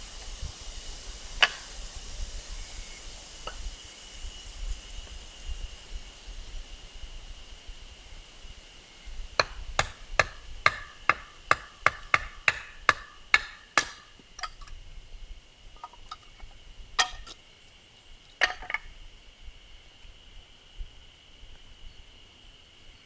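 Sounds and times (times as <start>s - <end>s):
high insect drone: 0.0s - 23.0s
wood splitting knocks: 1.4s - 1.7s, 9.4s - 14.7s.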